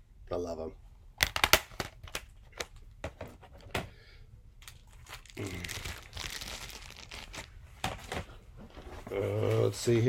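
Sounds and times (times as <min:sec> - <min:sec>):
packaging crinkling and rustling: 0:04.6 - 0:09.7.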